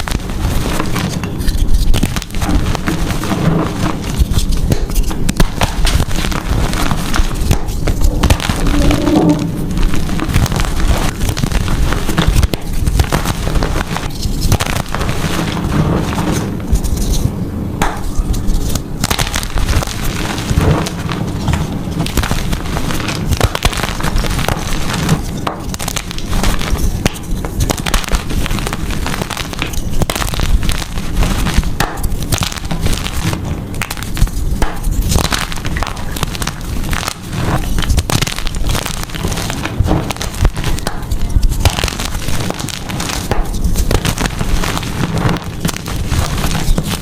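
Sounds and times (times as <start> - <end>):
chalk being crushed: 0.0 - 47.0.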